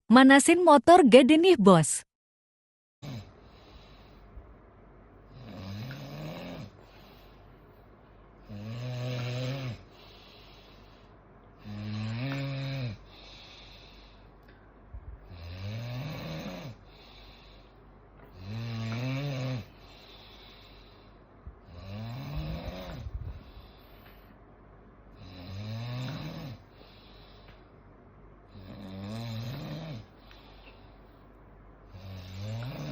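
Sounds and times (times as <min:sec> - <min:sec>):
person snoring heavily: 0:05.3 - 0:07.1, 0:08.4 - 0:10.8, 0:11.6 - 0:14.2, 0:15.2 - 0:17.7, 0:18.3 - 0:21.0, 0:21.7 - 0:23.7, 0:25.2 - 0:27.0, 0:28.5 - 0:30.2, 0:31.9 - 0:32.9.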